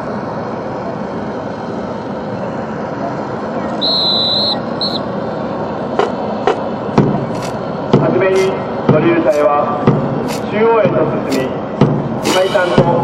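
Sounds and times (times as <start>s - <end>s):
outdoor noise: 0.0s - 13.0s
drill whistle blasts: 3.8s - 5.1s.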